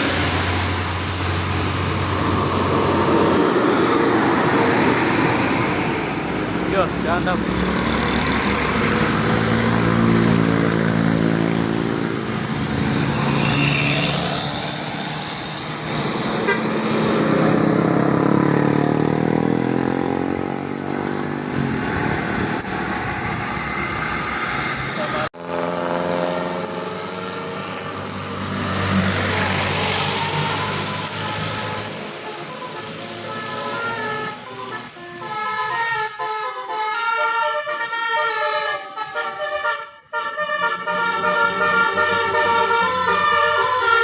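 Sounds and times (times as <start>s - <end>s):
bus engine running: 0.0s - 44.0s
people's voices: 6.6s - 8.0s
bus horn playing a tune: 15.9s - 17.4s, 25.4s - 44.0s.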